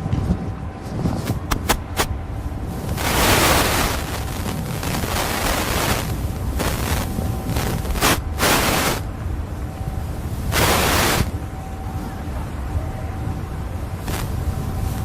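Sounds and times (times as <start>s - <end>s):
wind buffeting microphone: 0.0s - 15.0s
rushes of hiss: 1.4s - 9.1s, 10.2s - 11.4s, 14.0s - 15.0s.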